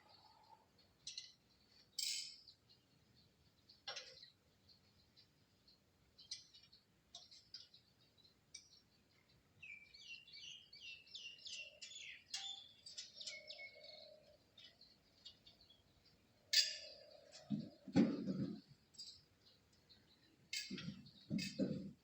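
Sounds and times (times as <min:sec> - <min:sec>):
songbird singing: 0:00.0 - 0:22.0.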